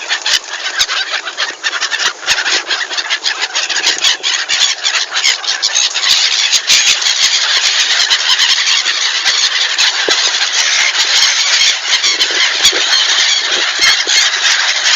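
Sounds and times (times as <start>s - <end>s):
flock of birds chattering: 0.0s - 14.9s.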